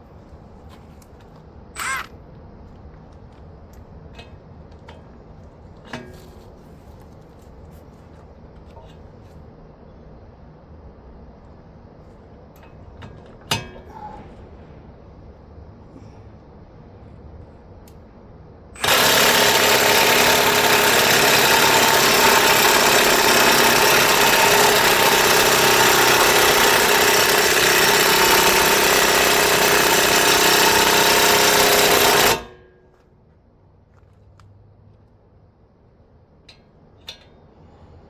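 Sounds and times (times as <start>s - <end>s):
impact wrench hammering: 18.8s - 32.6s.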